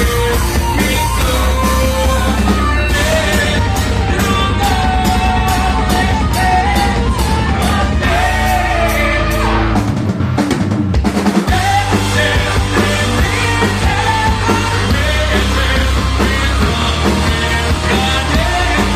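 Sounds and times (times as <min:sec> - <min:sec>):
person singing: 0:00.0 - 0:09.7, 0:11.5 - 0:18.9
heavy metal band playing live: 0:00.0 - 0:18.9.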